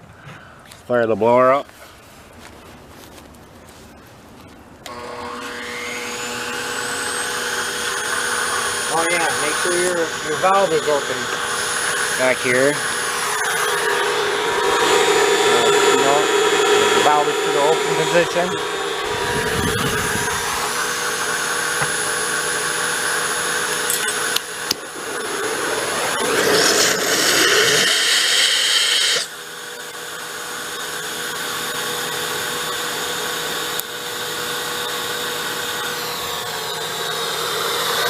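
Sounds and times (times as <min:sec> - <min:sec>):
electric blower motor whine: 0:04.8 - 0:38.0
torch hissing rush: 0:08.4 - 0:29.4.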